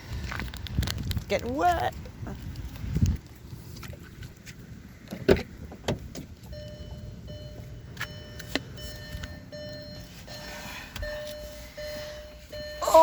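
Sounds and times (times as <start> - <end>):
car warning chime: 6.4 - 13.0.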